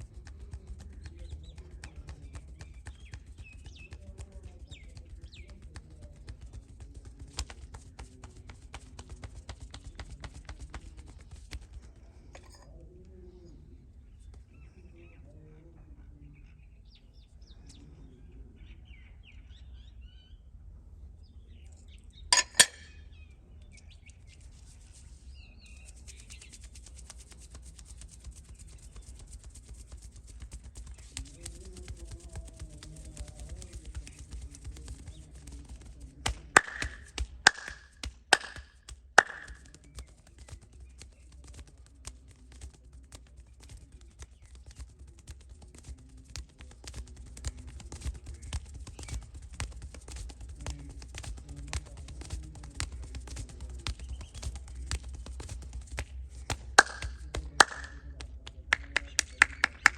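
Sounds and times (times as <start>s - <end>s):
hands tapping percussive massage: 0.0s - 12.7s, 22.4s - 23.0s, 25.8s - 59.9s
birds chirping: 0.0s - 59.9s.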